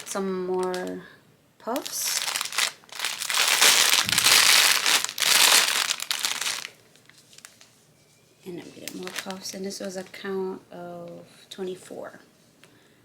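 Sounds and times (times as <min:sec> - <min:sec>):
packaging crinkling and rustling: 0:00.0 - 0:01.0, 0:01.7 - 0:07.8, 0:08.5 - 0:10.1.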